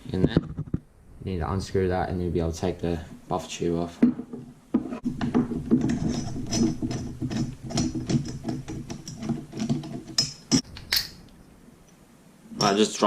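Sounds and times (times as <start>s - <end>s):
sharp knocks: 4.0s - 10.8s
metal parts rattling and clicking: 5.0s - 11.1s.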